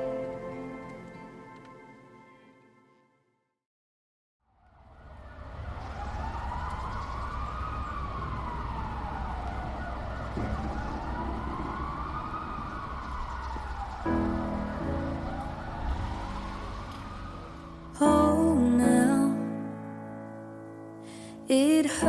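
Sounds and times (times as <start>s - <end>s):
music instruments: 0.0s - 3.1s
wailing siren tone: 4.5s - 19.7s.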